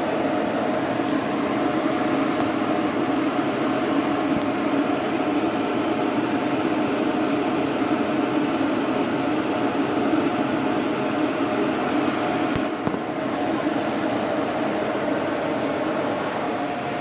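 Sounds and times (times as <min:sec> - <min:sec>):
fan or pump humming: 0:00.0 - 0:17.0.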